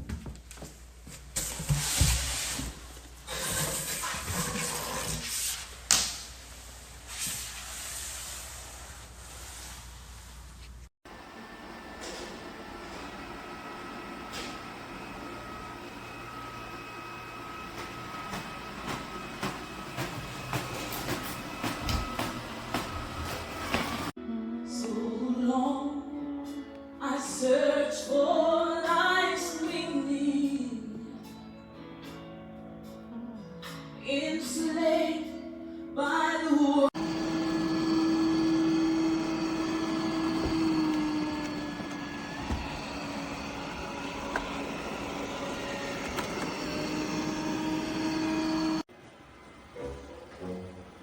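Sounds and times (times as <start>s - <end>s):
robot vacuum motor hum: 11.1s - 24.1s, 37.0s - 48.8s
woman singing slow melody: 24.2s - 31.5s, 33.0s - 36.9s.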